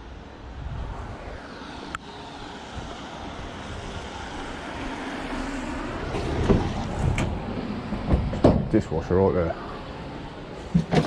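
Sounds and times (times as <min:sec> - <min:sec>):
van road and engine rumble: 0:00.0 - 0:11.0
knocks: 0:08.1 - 0:08.8.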